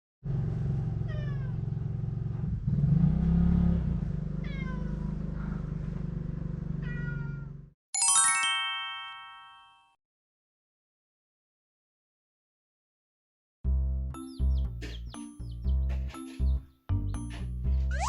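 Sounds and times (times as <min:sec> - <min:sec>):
cat meowing: 0:01.0 - 0:01.6, 0:04.4 - 0:05.0, 0:06.8 - 0:07.6
bright bell-like chime: 0:08.0 - 0:10.0.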